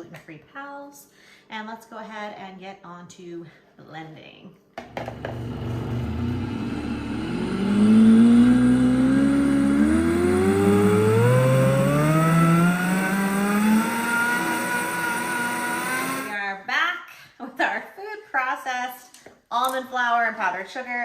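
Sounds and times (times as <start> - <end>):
blender motor whining: 4.8 - 16.4.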